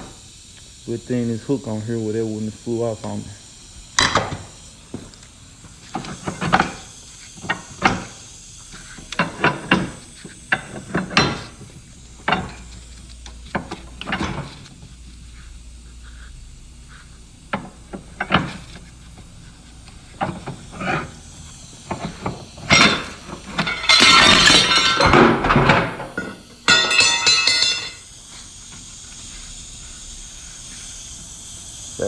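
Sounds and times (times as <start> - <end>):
metal clanking and clinking: 22.6 - 28.0
metal rattling and clattering: 22.8 - 28.0.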